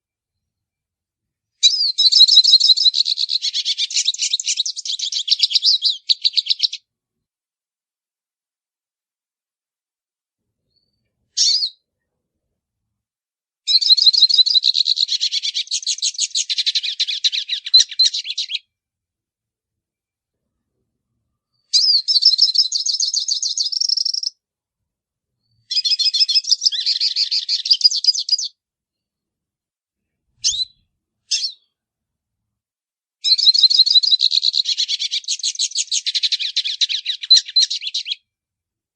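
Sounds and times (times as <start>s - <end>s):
bird twittering song: 1.6s - 6.8s, 10.7s - 11.8s, 13.7s - 18.6s, 21.5s - 24.4s, 25.4s - 28.6s, 30.4s - 31.8s, 33.2s - 38.2s.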